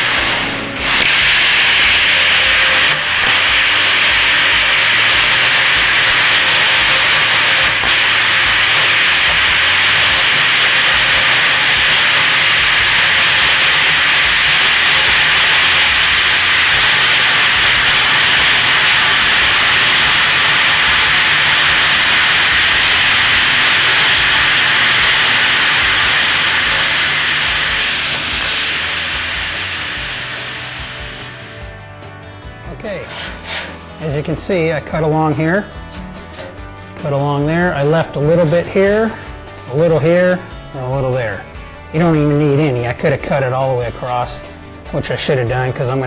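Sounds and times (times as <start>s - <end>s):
plasma cutter hissing: 0.0s - 31.7s, 32.8s - 34.4s, 37.7s - 40.9s.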